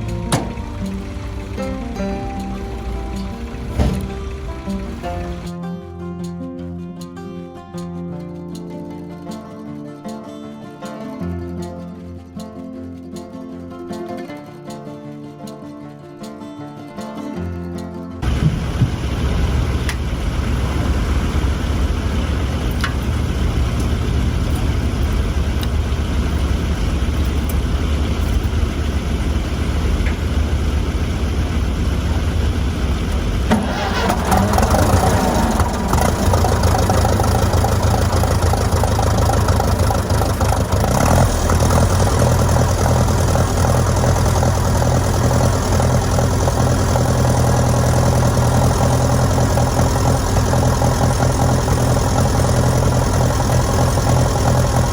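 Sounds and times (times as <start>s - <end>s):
engine running: 0.0s - 5.5s, 18.2s - 54.9s.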